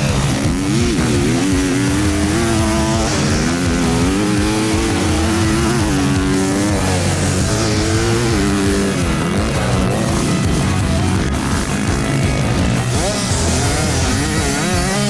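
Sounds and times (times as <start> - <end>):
background music: 0.0 - 15.0
dirt bike engines revving: 0.0 - 15.0.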